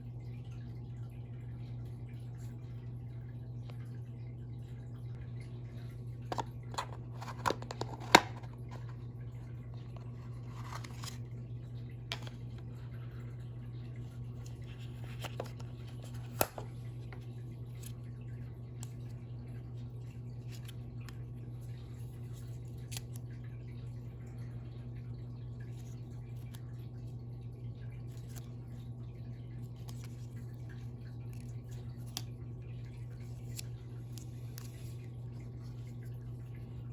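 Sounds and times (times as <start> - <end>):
steady low hum: 0.0 - 36.9
packaging clicks and taps: 6.3 - 8.9.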